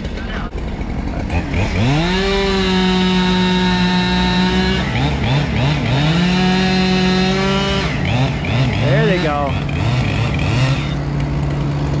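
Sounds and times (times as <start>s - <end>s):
chainsaw revving: 0.0s - 12.0s.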